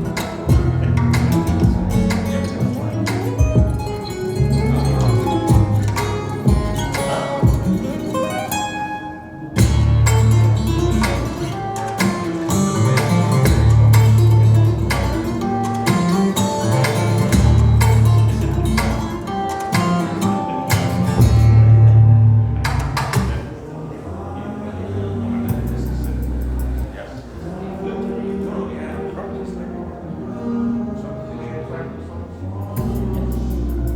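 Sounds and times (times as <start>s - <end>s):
plucked strings over deep bass: 0.0s - 8.9s, 9.6s - 23.5s, 25.4s - 26.9s, 32.8s - 33.9s.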